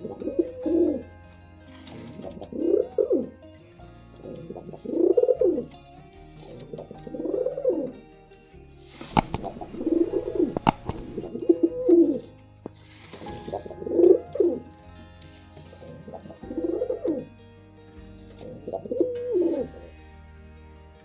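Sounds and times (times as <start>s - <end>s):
pigeons cooing: 4.2s - 5.7s
sharp clicks: 9.0s - 11.3s.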